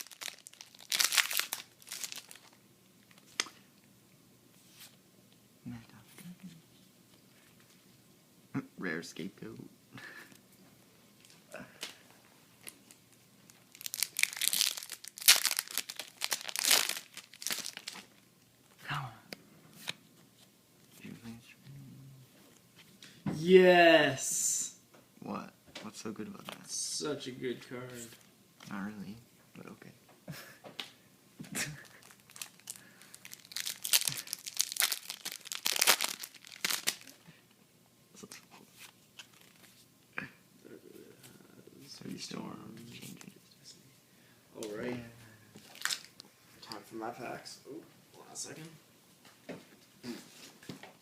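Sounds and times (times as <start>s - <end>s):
foil wrapper crinkling and tearing: 0.0s - 3.5s, 12.6s - 18.2s, 31.6s - 37.2s, 39.2s - 39.8s, 45.7s - 46.2s.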